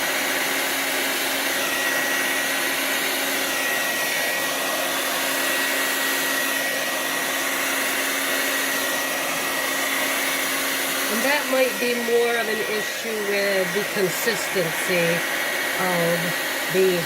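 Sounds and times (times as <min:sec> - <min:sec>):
blow dryer running: 0:00.0 - 0:17.0.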